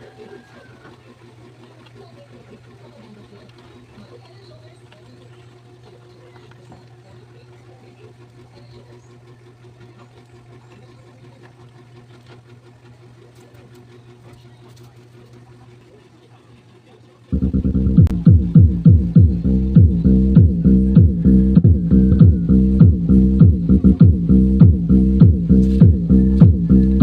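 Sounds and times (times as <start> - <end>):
steady low hum: 0.0 - 27.0
bass-heavy music from subwoofer: 17.3 - 27.0.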